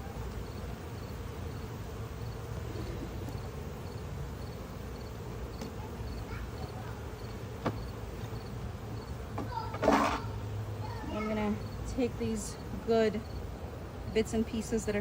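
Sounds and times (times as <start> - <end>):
bees humming: 0.0 - 15.0
cricket chirping: 0.4 - 9.2, 13.2 - 13.5.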